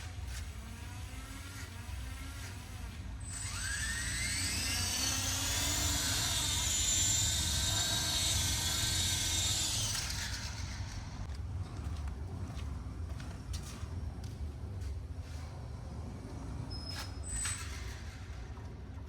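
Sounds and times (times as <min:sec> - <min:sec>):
helicopter motor whine: 0:03.2 - 0:11.2.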